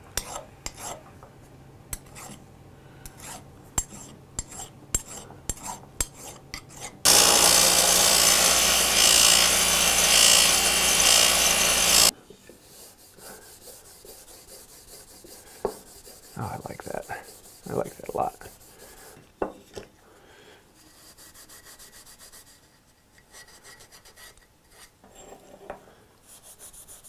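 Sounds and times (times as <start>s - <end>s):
hand-filing strokes: 0.2s - 1.0s, 3.0s - 19.2s, 20.8s - 25.0s, 26.2s - 27.0s
loud steady machine noise: 7.1s - 12.1s
rubbing strokes: 12.5s - 19.2s, 20.8s - 25.0s.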